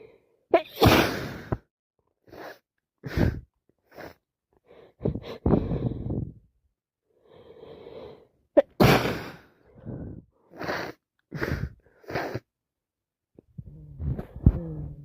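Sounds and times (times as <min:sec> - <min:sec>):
person sneezing: 0:00.5 - 0:01.6, 0:08.6 - 0:09.5.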